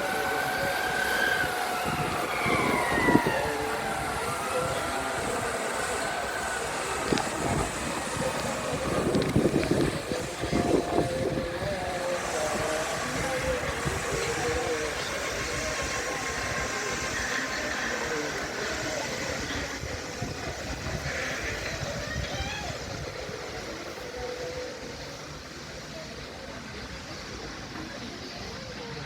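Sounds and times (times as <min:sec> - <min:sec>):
helicopter engine and rotor: 0:00.0 - 0:20.5
faint voices: 0:00.0 - 0:29.0.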